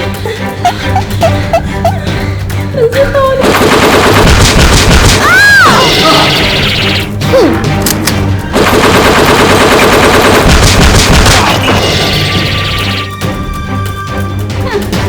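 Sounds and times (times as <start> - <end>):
background music: 0.0 - 15.0
machine-gun fire: 3.4 - 5.4, 8.5 - 13.0.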